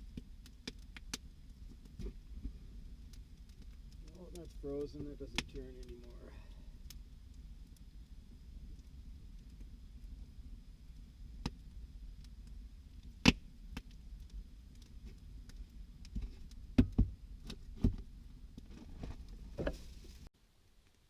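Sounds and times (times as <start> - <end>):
faint low rumble: 0.0 - 20.3.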